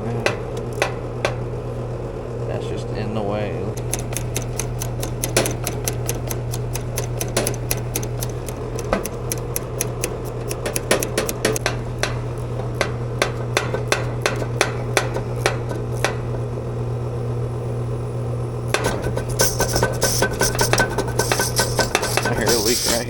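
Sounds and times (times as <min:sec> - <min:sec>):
air conditioning unit hum: 0:00.0 - 0:23.0
ratchet wrench clicking: 0:03.8 - 0:11.8, 0:18.8 - 0:23.0
refrigerant hissing: 0:18.8 - 0:23.0.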